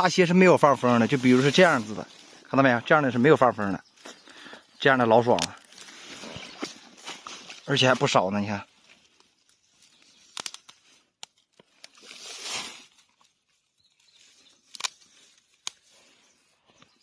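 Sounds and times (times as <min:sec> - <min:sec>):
leaves rustling: 0:00.0 - 0:16.6
stalks snapping: 0:05.2 - 0:05.9, 0:09.9 - 0:13.3, 0:14.6 - 0:15.9.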